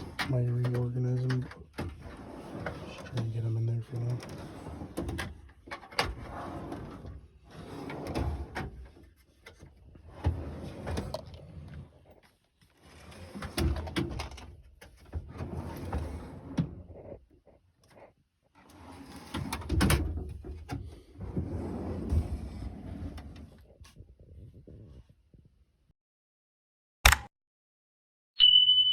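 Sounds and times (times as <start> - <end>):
metal drawers sliding: 4.0 - 9.0, 10.0 - 11.8.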